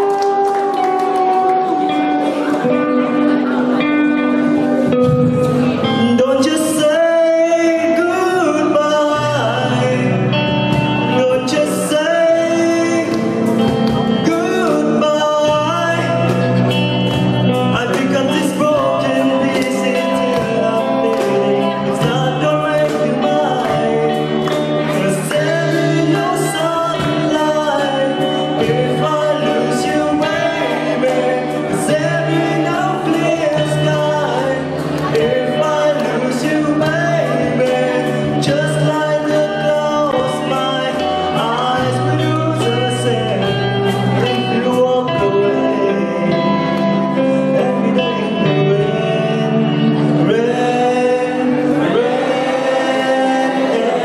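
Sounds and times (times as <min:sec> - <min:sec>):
instrumental accompaniment: 0:00.0 - 0:54.0
person singing: 0:00.0 - 0:54.0.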